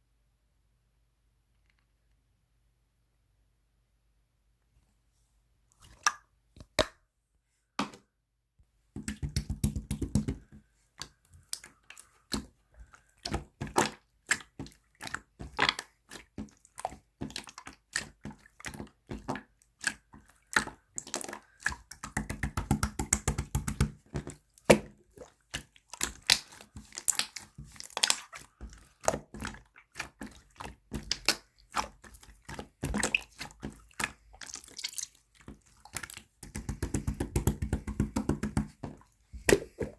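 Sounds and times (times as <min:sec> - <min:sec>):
slime squished by hand: 0:09.0 - 0:39.9.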